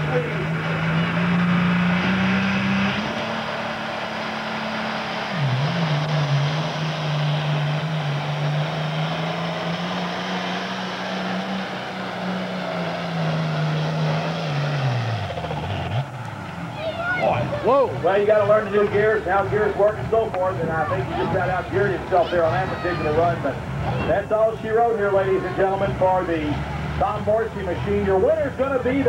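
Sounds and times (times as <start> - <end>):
tractor diesel engine at full throttle: 0.0 - 29.0.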